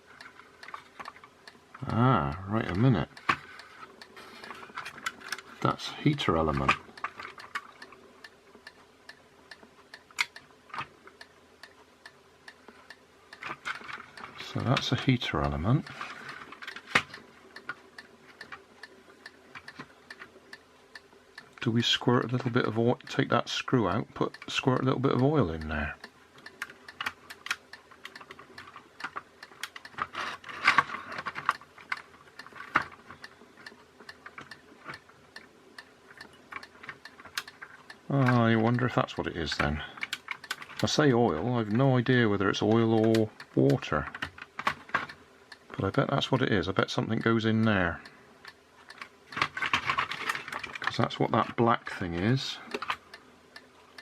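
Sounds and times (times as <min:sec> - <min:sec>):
plastic parts clicking and tapping: 0:00.0 - 0:08.0, 0:12.7 - 0:18.6, 0:26.4 - 0:35.1, 0:36.1 - 0:41.8, 0:42.6 - 0:45.2, 0:48.4 - 0:51.6, 0:52.2 - 0:53.2
faint regular ticking: 0:00.0 - 0:54.0
faint steady hum: 0:00.0 - 0:54.0.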